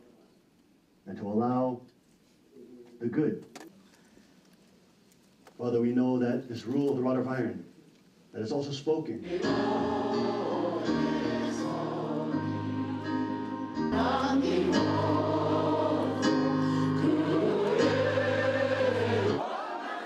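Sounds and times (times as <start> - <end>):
choir singing held chords: 9.2 - 20.0.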